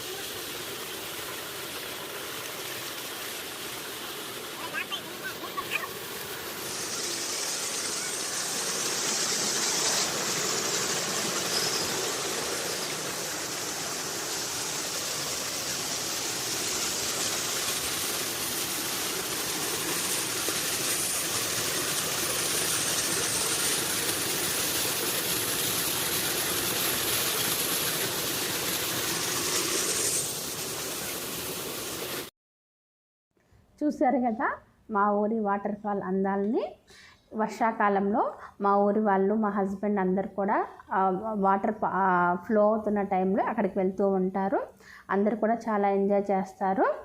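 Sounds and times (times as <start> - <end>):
waterfall rushing: 0.0 - 32.3.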